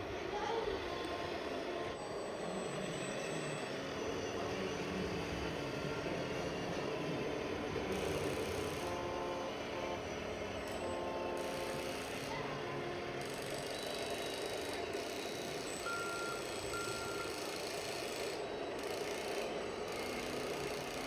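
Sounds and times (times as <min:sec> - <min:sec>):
rattling whirring model machines: 0:02.5 - 0:21.0
short beeps: 0:15.4 - 0:17.6.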